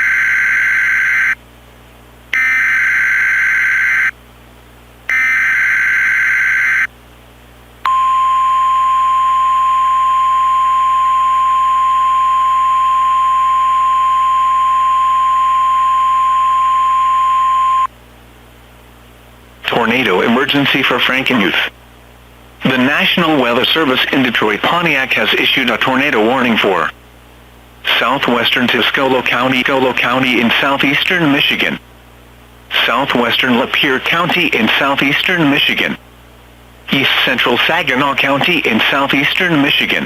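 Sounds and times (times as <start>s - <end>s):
steady attention tone: 7.8s - 17.9s.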